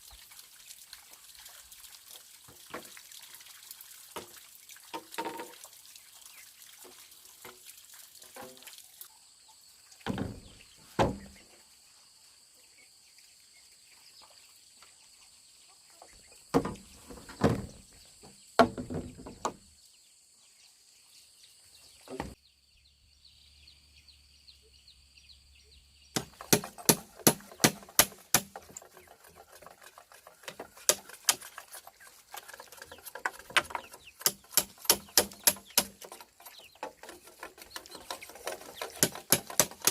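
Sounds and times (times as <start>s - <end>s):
sharp taps and clicks: 33.6s - 36.1s.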